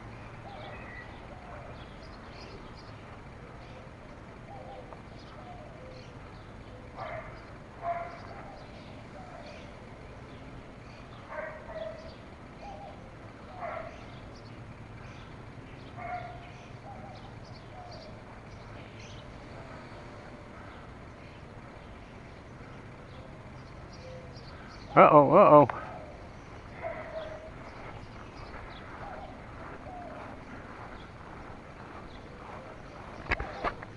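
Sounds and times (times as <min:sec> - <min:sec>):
dog barking: 0:07.0 - 0:08.2, 0:11.3 - 0:12.1, 0:13.6 - 0:14.0, 0:16.0 - 0:16.4, 0:26.8 - 0:27.5.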